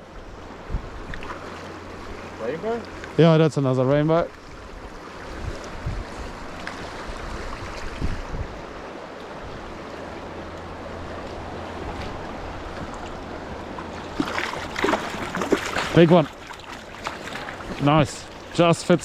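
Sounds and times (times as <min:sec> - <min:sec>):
river rushing over stones: 0:01.3 - 0:19.0.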